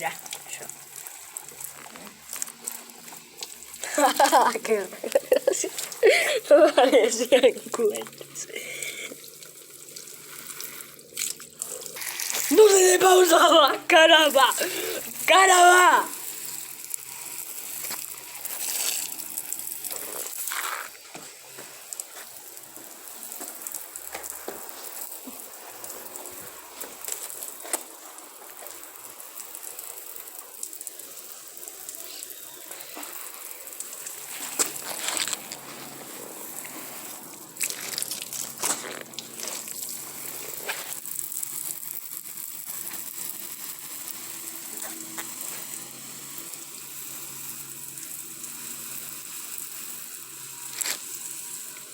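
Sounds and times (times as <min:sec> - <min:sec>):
heavy rain falling: 0:03.8 - 0:07.9.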